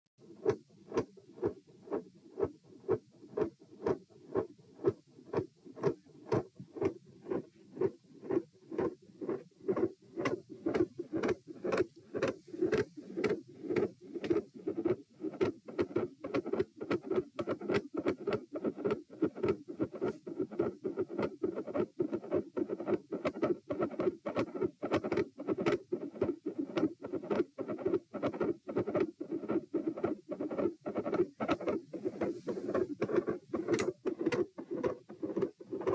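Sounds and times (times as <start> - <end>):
extra heart sounds: 0.4 - 15.0
heartbeat lub-dub: 0.4 - 15.0.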